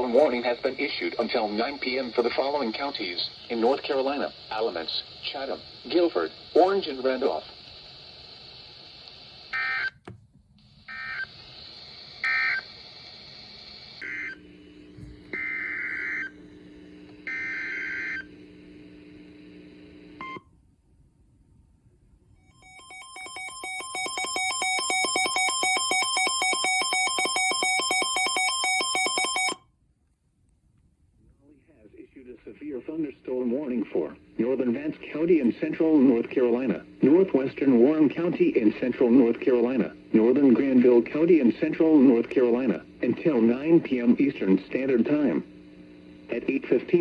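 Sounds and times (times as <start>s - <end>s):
two-tone digital data bursts: 22.6s - 29.6s.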